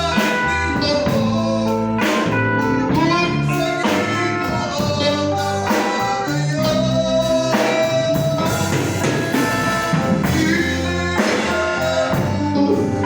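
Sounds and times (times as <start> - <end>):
bass: 0.0 - 13.0
drum kit: 0.0 - 13.0
guitar: 0.0 - 13.0.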